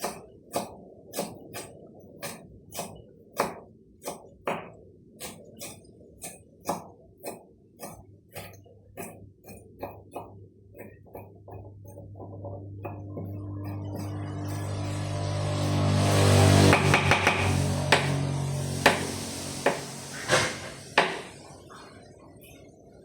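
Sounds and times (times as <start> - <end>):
knife chopping on cutting board: 0.0 - 12.0, 16.7 - 18.2, 18.8 - 21.3
low steady hum: 0.0 - 23.0.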